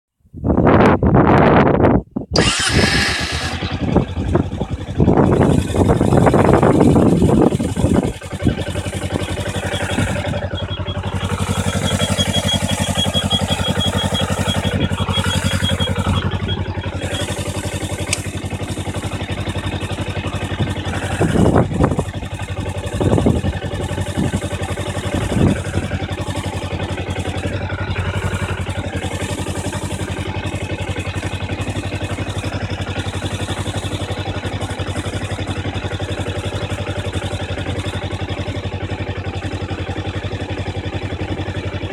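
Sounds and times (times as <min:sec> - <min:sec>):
motorcycle engine idling: 0:00.4 - 0:41.9
thin high squeak: 0:09.5 - 0:18.3.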